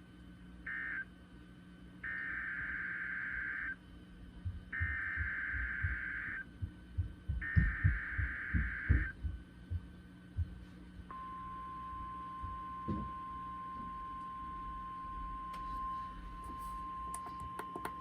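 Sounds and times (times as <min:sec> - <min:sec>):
steady attention tone: 0:00.7 - 0:01.2, 0:02.0 - 0:18.0
buzzy digital data tones: 0:02.0 - 0:03.8, 0:04.7 - 0:06.5, 0:07.4 - 0:09.2
dull low thumps: 0:04.4 - 0:11.1.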